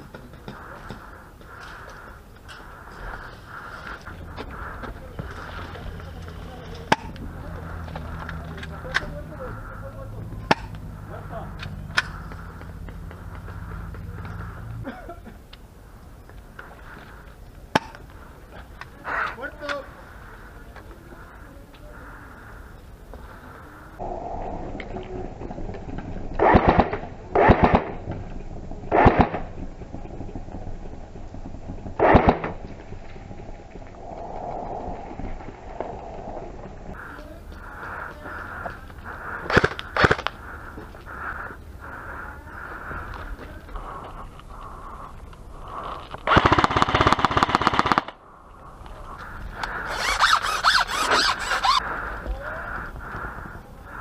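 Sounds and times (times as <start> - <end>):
hissing with whistle-like tones: 33.8 - 36.9
airsoft rifles automatic fire: 46.2 - 48.2.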